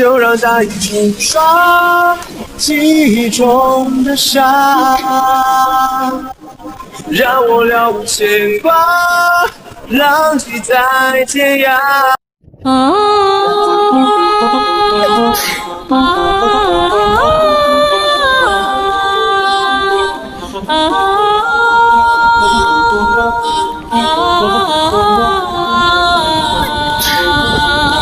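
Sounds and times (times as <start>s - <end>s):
woman singing: 0.0s - 6.4s, 12.6s - 28.0s.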